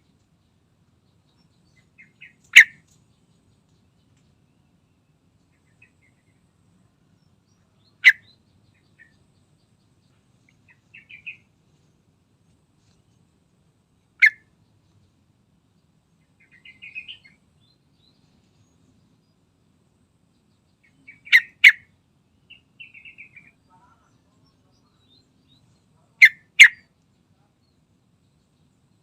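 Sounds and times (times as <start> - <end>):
bird calling sharp notes: 2.0 - 2.8, 14.2 - 14.5, 21.0 - 21.8.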